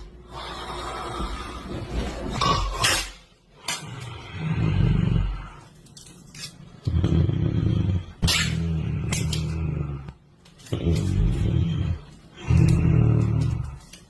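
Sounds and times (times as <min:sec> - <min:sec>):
rattling snore: 0:06.8 - 0:13.9.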